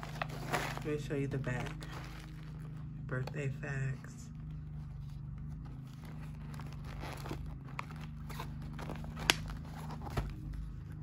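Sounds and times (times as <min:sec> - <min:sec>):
chip bag crinkling and rustling: 0:00.0 - 0:02.8.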